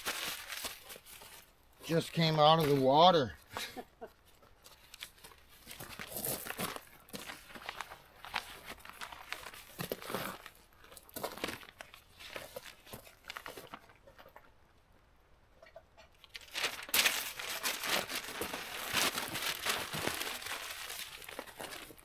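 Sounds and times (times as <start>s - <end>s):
paper crumpling and tearing: 0.0s - 1.4s, 16.3s - 22.0s.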